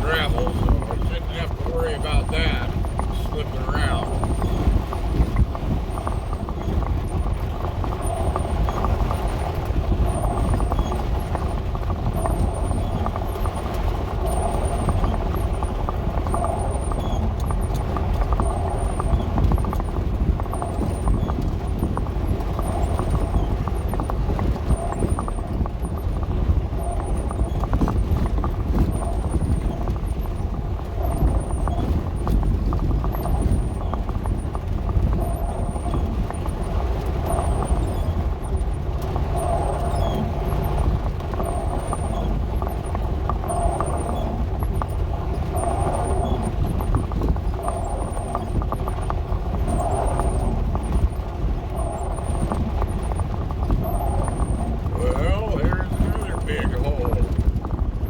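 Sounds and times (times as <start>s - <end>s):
van engine rumbling: 0.0s - 58.0s.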